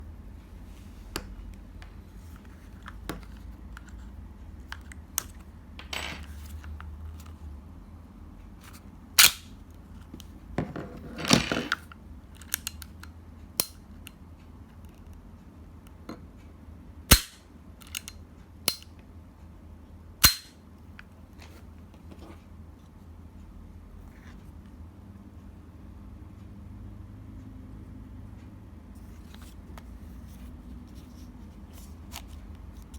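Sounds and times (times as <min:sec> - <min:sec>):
airsoft pistol shots: 0:17.1 - 0:17.4, 0:20.2 - 0:20.5
small metallic clicks: 0:17.8 - 0:18.9.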